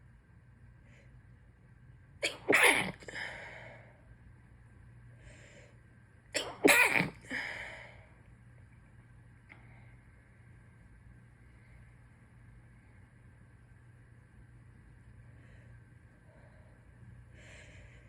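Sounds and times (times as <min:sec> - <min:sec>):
person sneezing: 0:02.2 - 0:03.4, 0:06.4 - 0:07.7.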